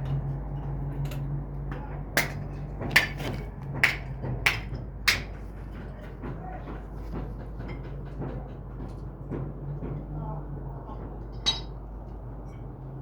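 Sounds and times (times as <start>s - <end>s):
hammer striking: 2.2s - 5.9s, 11.4s - 11.8s.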